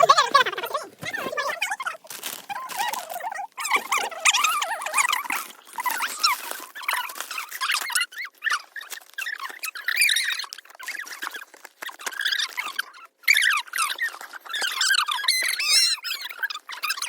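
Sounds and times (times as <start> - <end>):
birds chattering: 0.0 - 8.4.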